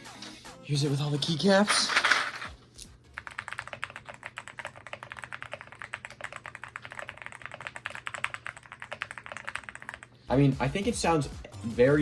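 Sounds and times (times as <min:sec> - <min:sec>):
mechanical keyboard typing: 0:03.2 - 0:10.1.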